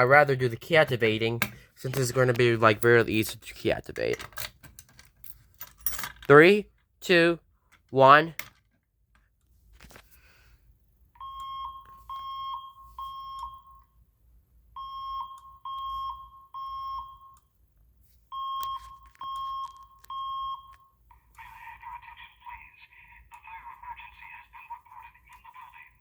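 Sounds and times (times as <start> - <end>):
fire alarm short beeps: 11.2 - 14.0, 14.8 - 17.5, 18.3 - 21.0.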